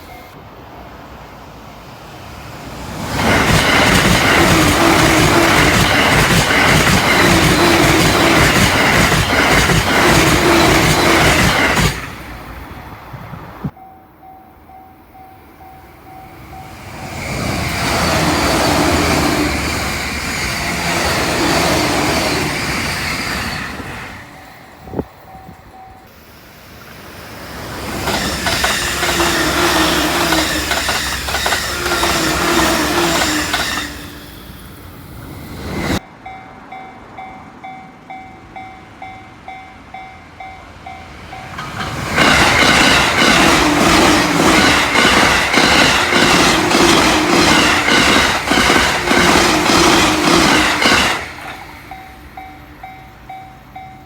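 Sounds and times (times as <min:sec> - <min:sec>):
crossing bell ringing: 0:00.0 - 0:00.5, 0:13.7 - 0:19.6, 0:23.4 - 0:26.2, 0:35.9 - 0:54.0
electric trains rushing past: 0:00.0 - 0:54.0
wheels clattering over rail joints: 0:03.0 - 0:12.3, 0:41.4 - 0:53.0.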